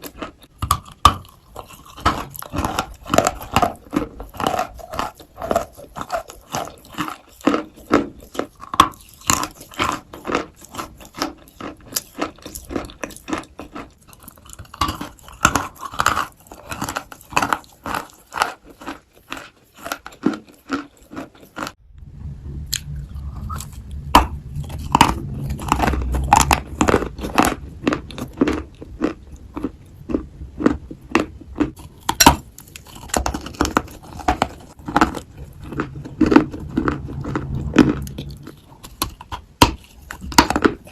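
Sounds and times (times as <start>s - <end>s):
crunchy chewing of dry clay: 0.0s - 21.8s, 22.7s - 40.9s
low hum: 21.8s - 40.9s.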